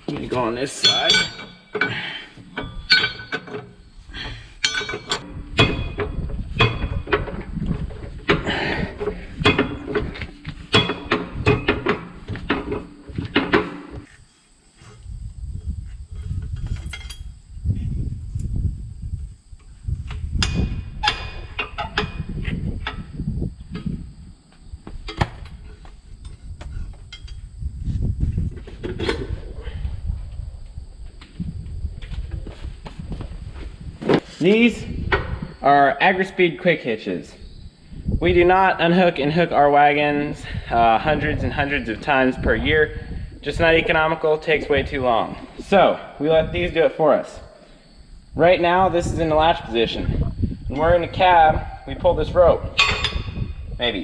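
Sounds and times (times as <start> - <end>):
steel clanks and knocks: 0.1 - 14.1, 20.4 - 23.1, 25.0 - 27.4, 52.8 - 53.5.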